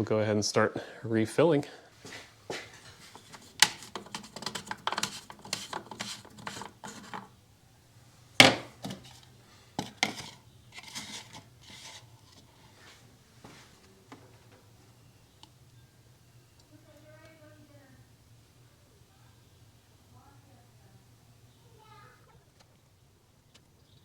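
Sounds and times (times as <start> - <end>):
oil bottles and caps clicking: 3.0 - 7.3, 8.4 - 12.6.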